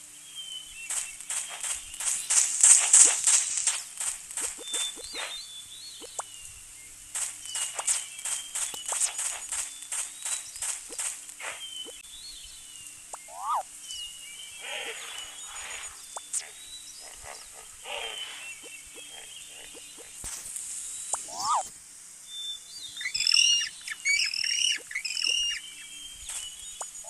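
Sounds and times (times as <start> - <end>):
crunching footsteps: 0.9 - 5.4, 7.1 - 12.0
high bird chirps: 4.4 - 6.6, 7.4 - 20.3, 20.9 - 21.7, 22.4 - 27.0
short rising calls: 13.1 - 13.7, 21.1 - 21.7
harsh noisy animal calls: 13.3 - 13.6, 14.6 - 20.1.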